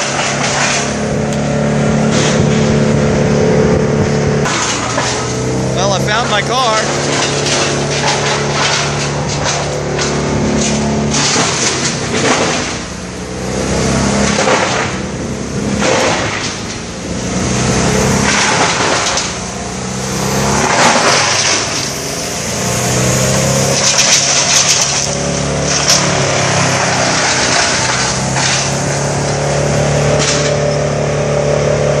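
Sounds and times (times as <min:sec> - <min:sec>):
engine running: 0:00.0 - 0:32.0
loud rushing noise: 0:00.0 - 0:32.0.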